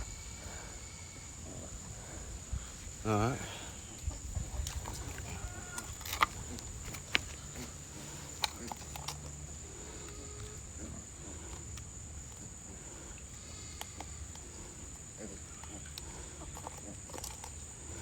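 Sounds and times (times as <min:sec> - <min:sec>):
pig grunting: 0:09.6 - 0:11.8, 0:14.4 - 0:17.1.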